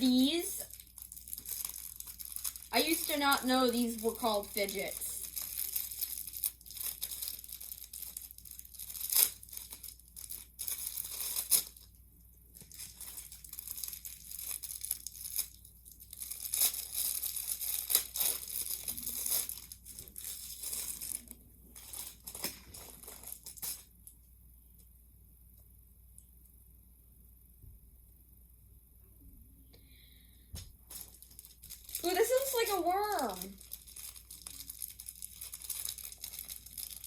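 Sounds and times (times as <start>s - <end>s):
packaging crinkling and tearing: 0.0s - 23.9s, 30.9s - 37.0s.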